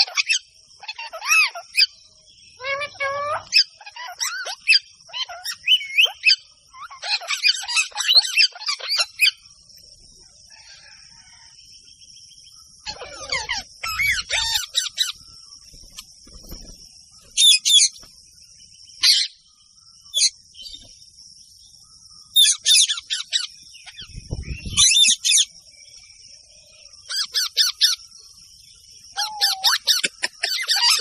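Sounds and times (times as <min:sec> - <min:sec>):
parrots chirping and squawking: 0:00.0 - 0:02.0, 0:02.6 - 0:09.5, 0:12.7 - 0:18.1, 0:19.0 - 0:19.4, 0:22.3 - 0:25.5, 0:27.1 - 0:28.0, 0:29.1 - 0:31.0.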